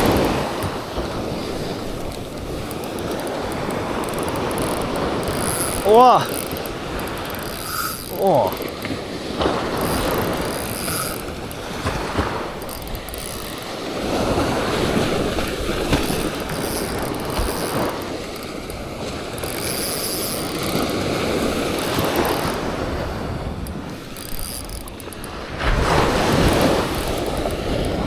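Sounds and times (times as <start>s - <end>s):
fishing reel whirring and clicking: 0.0s - 28.0s
surf breaking: 0.0s - 28.0s.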